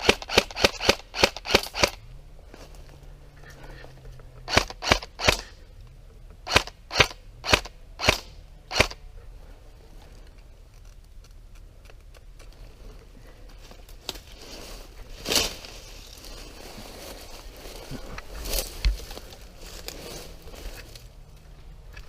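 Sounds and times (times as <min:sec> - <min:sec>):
airsoft gun shots: 0:06.4 - 0:09.0.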